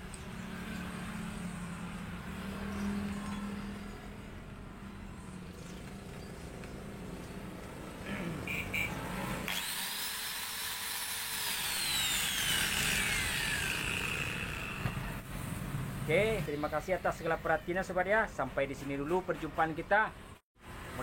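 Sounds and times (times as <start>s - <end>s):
angle grinder motor whine: 9.4s - 15.2s.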